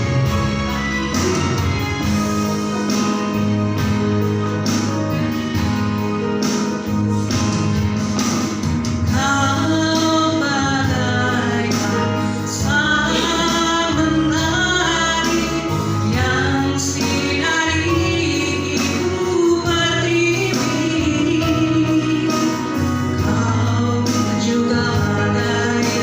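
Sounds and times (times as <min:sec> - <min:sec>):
instrumental accompaniment: 0:00.0 - 0:26.0
people singing: 0:09.2 - 0:22.6.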